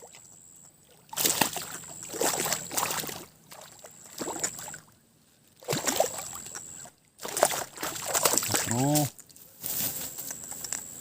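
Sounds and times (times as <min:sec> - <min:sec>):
water splashing: 0:00.0 - 0:05.0, 0:05.6 - 0:09.2.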